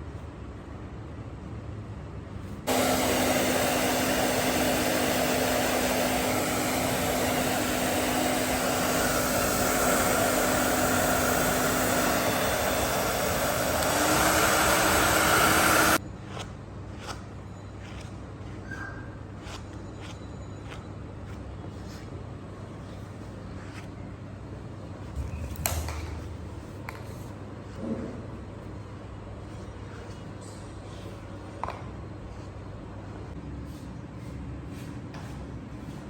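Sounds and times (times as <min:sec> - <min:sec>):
blow dryer blowing: 0:02.7 - 0:16.0.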